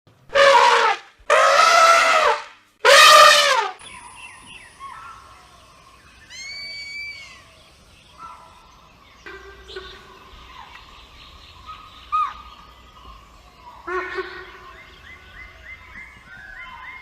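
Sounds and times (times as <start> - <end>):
elephant trumpeting: 0.3 - 3.8
faint birdsong: 3.8 - 17.0
whistled bird call: 6.3 - 7.6.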